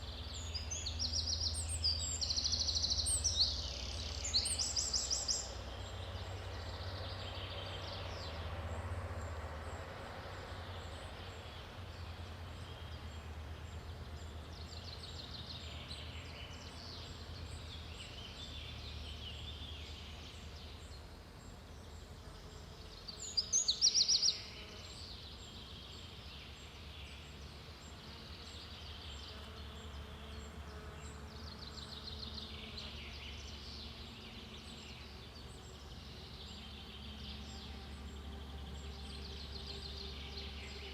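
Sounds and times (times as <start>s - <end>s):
birds singing: 0.0s - 8.9s, 9.6s - 40.9s.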